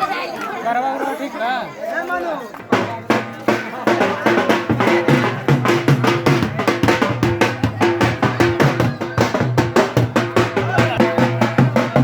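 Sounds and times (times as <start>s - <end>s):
fast loud drumming: 2.7s - 12.0s.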